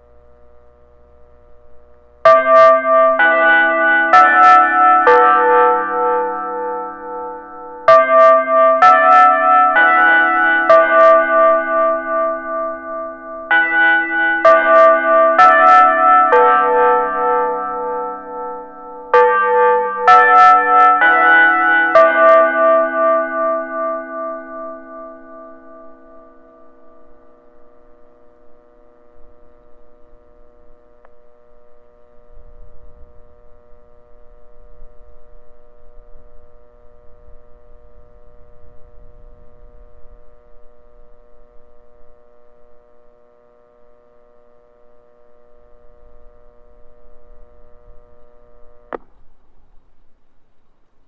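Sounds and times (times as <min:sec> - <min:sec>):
loudspeaker electrical hum: 0:00.0 - 0:51.0
loudspeaker click: 0:48.9 - 0:49.4.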